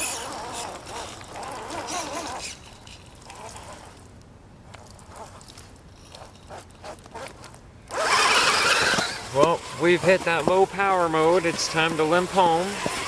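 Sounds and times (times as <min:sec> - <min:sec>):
electric motor whining: 0:00.0 - 0:02.6, 0:07.9 - 0:13.0.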